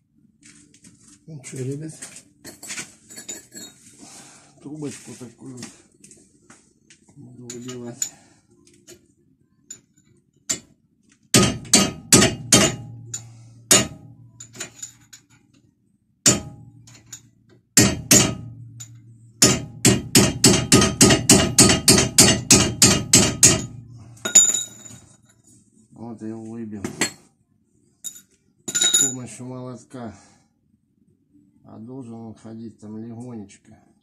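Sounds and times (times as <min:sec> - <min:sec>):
hammer striking metal tube: 0:11.3 - 0:14.8, 0:16.2 - 0:17.2, 0:17.8 - 0:24.9.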